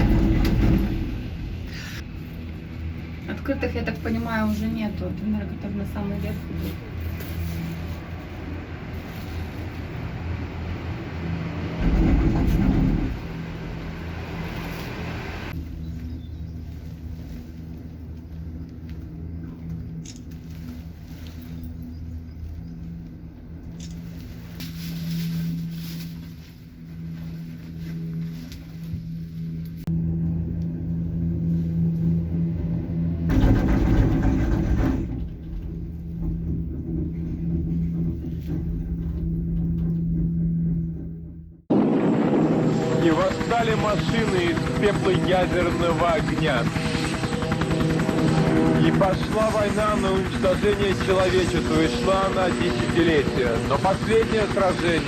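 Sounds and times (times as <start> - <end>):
low rumble: 0.0 - 55.0
vehicle engine low hum: 0.0 - 55.0
rushing noise: 8.6 - 15.6.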